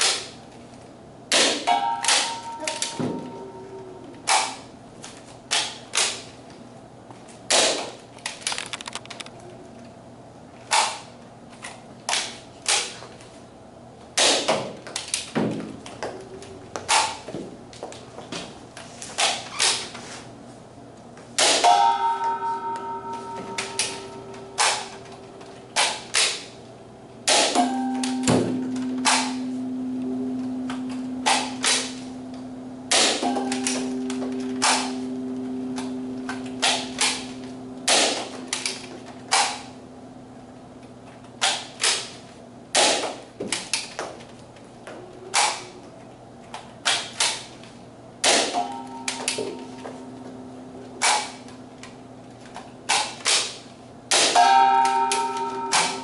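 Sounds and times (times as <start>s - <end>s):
steady low tone: 1.9s - 4.3s, 21.7s - 25.8s, 26.6s - 40.6s, 48.6s - 51.8s
foam blaster shots snapping: 37.9s - 38.3s, 42.8s - 43.2s, 48.2s - 48.6s.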